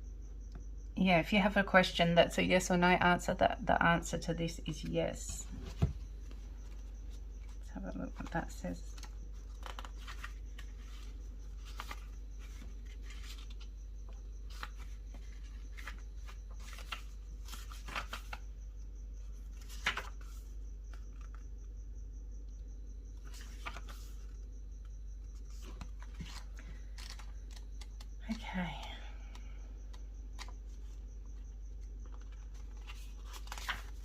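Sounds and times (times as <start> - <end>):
steady low hum: 0.0 - 34.0
paper pages rustling: 8.9 - 18.4, 19.5 - 21.4, 23.2 - 24.4, 25.3 - 28.0, 32.0 - 34.0.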